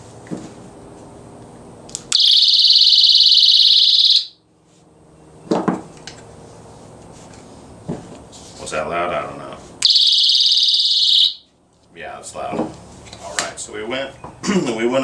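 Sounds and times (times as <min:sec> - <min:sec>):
high-pitched alarm tone: 0:02.2 - 0:04.4, 0:09.8 - 0:11.4.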